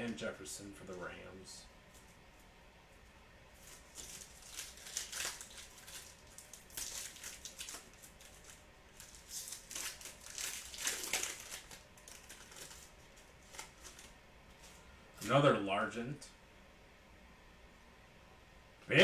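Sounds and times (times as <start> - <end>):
card pack wrapper crinkling: 3.6 - 14.8.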